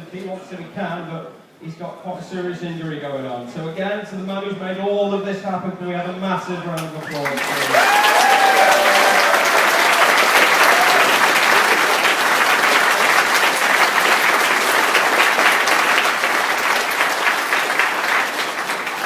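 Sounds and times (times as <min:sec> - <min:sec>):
audience applauding: 0:06.9 - 0:19.0.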